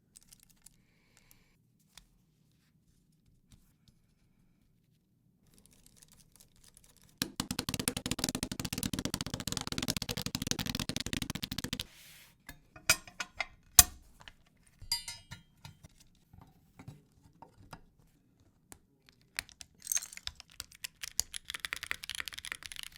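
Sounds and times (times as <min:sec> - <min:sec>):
mechanical keyboard typing: 0:07.2 - 0:11.9, 0:20.3 - 0:22.9.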